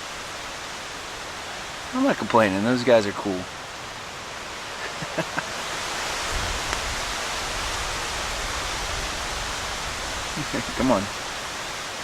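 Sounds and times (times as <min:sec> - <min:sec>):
wind hissing through trees: 0:00.0 - 0:12.0
wind rumble on microphone: 0:06.1 - 0:10.9.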